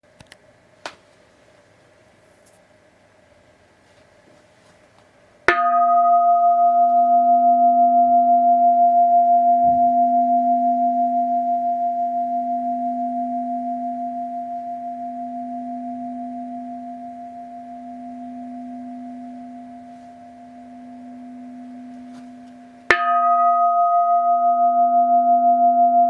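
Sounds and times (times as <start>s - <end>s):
bowl bell ringing: 5.5s - 26.0s.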